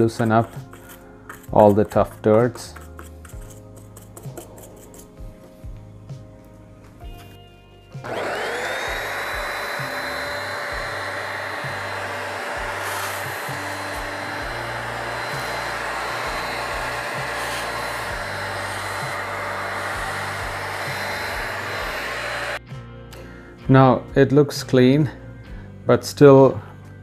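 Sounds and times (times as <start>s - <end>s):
small vacuum cleaner motor whine: 8.0s - 22.6s.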